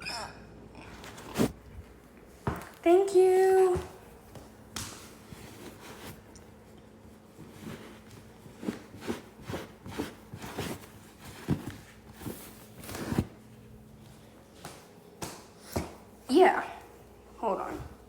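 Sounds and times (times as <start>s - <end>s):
handling knocks and rustles: 0.9s - 6.4s, 7.3s - 16.1s.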